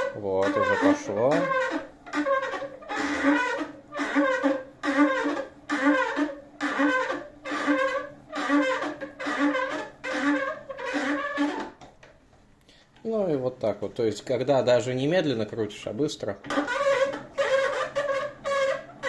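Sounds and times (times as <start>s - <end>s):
desk crank mechanism squeaking: 0.0s - 12.1s, 16.4s - 19.0s.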